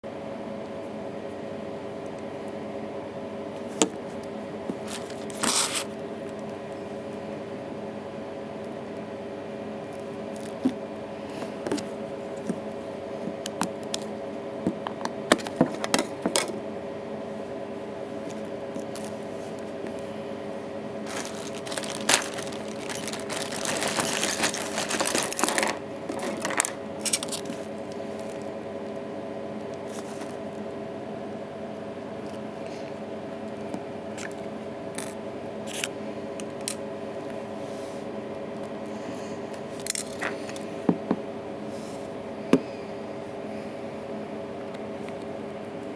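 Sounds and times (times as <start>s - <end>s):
steady machine hum: 0.0s - 45.9s
hands handling phone and tools: 14.7s - 16.6s, 21.1s - 28.4s
scraping and rustling: 21.0s - 28.4s.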